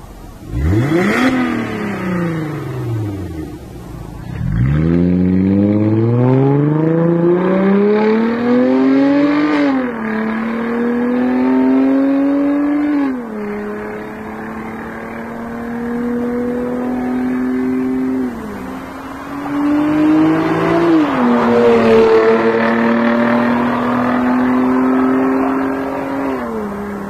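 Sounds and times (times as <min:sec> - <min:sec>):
car engine accelerating: 0:00.0 - 0:27.0.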